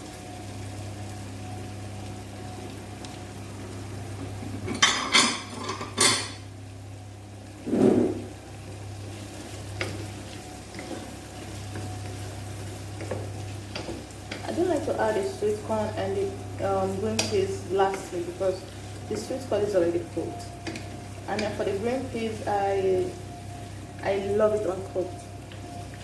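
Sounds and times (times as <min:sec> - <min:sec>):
low hum: 0:07.6 - 0:08.5.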